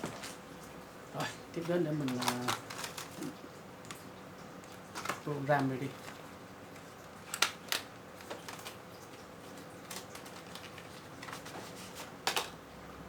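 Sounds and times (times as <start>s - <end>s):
hands handling plastic packaging: 1.2s - 12.7s.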